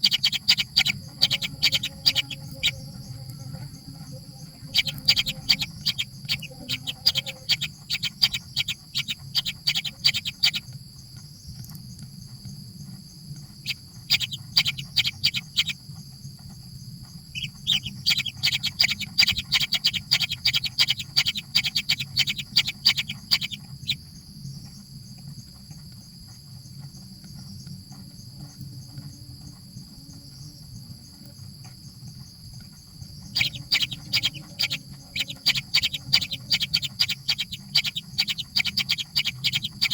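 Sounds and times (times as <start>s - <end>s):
steady high whine: 0.0s - 10.7s, 12.6s - 24.1s, 33.0s - 39.9s
baby birds chirping: 0.0s - 10.8s, 13.4s - 15.8s, 17.1s - 24.0s, 32.6s - 39.9s.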